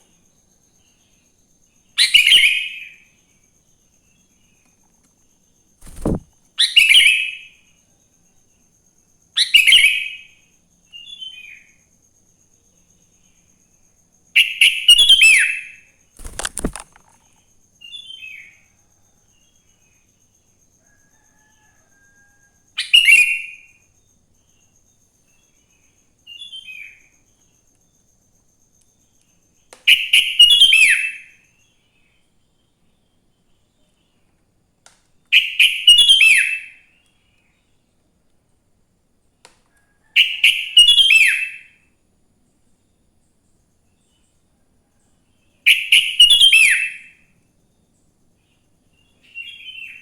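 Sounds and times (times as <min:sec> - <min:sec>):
dull thumps: 0:05.8 - 0:06.3.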